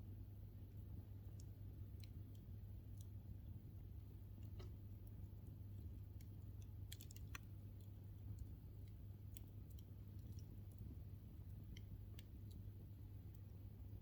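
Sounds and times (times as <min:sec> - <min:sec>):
steady low hum: 0:00.0 - 0:14.0
wood fire crackling: 0:00.7 - 0:14.0
sharp pops and snaps: 0:04.4 - 0:12.7.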